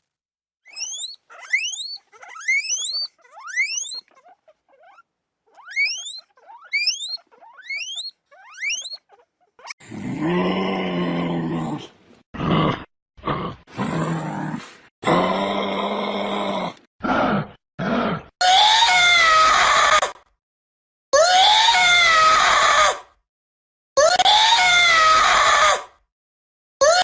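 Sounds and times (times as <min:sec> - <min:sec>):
high rising animal chirps: 0:00.7 - 0:09.8
low drawn-out animal call: 0:00.7 - 0:11.2.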